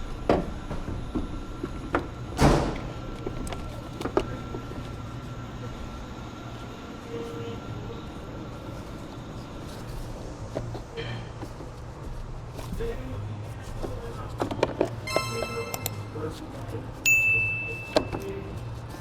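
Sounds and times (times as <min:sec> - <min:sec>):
steady low hum: 0:00.0 - 0:19.0
car parts knocking and clunking: 0:00.2 - 0:04.4
loud thud: 0:02.4 - 0:03.1.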